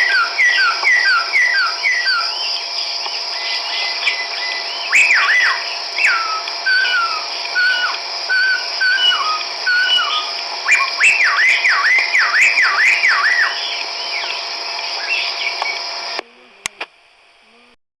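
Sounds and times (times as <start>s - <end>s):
bird whistling calls: 0.0s - 16.2s
steady high hiss: 0.0s - 17.8s
clicks: 3.0s - 3.3s, 6.4s - 6.7s, 13.7s - 17.0s.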